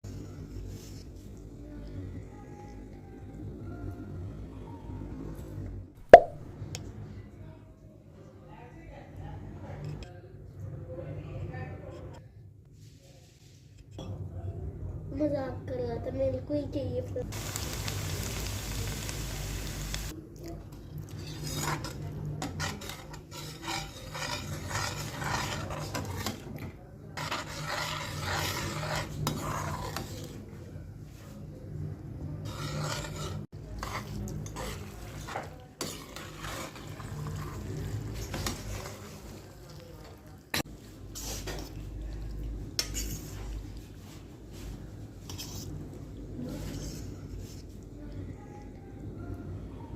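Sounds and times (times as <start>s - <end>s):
steady hiss: 17.3s - 20.1s
spoon scraping cooking pan: 21.1s - 30.4s, 32.4s - 41.9s, 42.8s - 43.5s.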